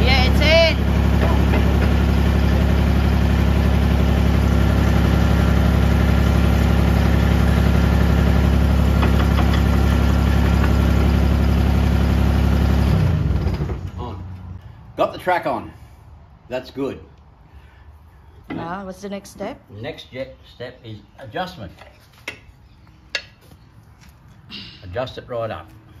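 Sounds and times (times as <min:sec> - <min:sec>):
diesel engine idling: 0:00.0 - 0:14.8.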